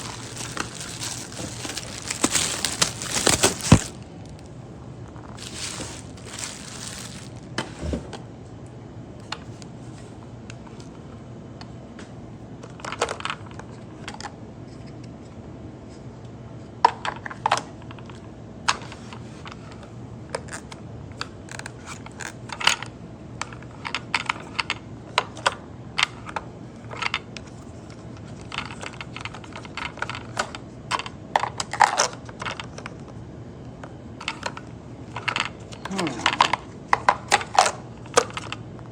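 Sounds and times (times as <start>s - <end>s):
low steady hum: 0.0s - 11.1s.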